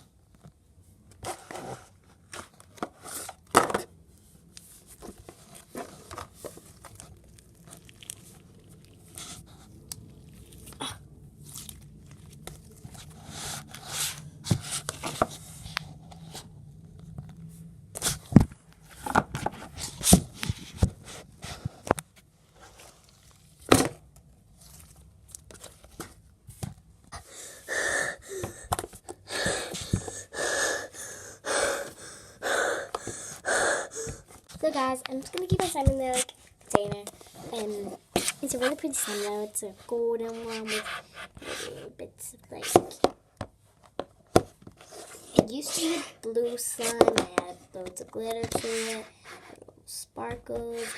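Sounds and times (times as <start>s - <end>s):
slime squishing and popping: 6.9s - 9.1s.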